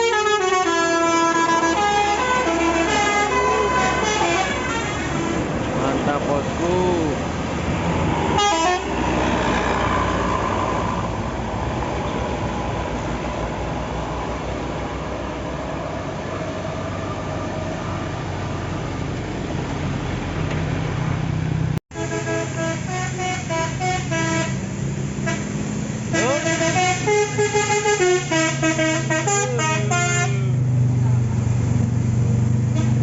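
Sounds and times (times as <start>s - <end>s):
multi-tone bus horn tune: 0.0s - 5.7s, 8.3s - 9.4s, 21.9s - 30.7s, 32.6s - 33.0s
heavy vehicle engine: 0.0s - 33.0s
road traffic noise: 0.0s - 33.0s.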